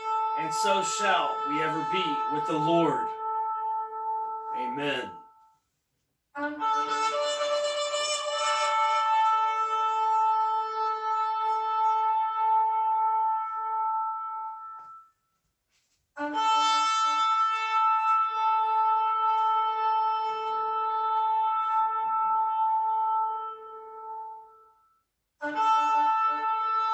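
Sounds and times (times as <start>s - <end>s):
shofar long blasts: 0.0s - 5.4s, 6.4s - 15.1s, 16.2s - 24.7s, 25.4s - 26.9s.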